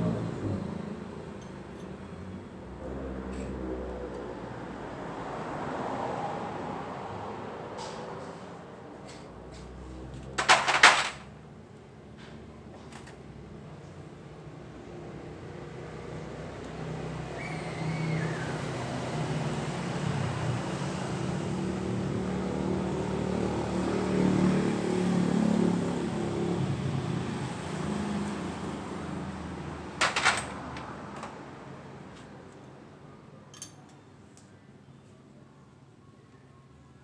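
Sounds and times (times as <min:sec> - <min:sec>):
vehicle engine: 0:00.0 - 0:07.2, 0:07.8 - 0:11.5, 0:15.5 - 0:32.4.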